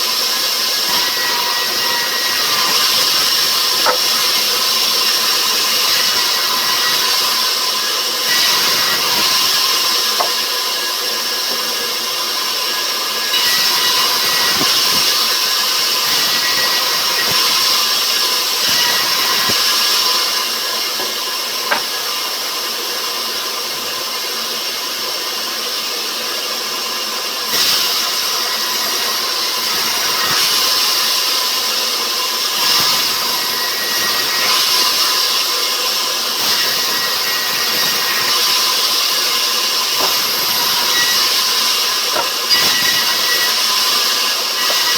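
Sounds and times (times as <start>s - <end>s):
sawmill saw cutting wood: 0.0s - 24.6s, 27.2s - 44.9s.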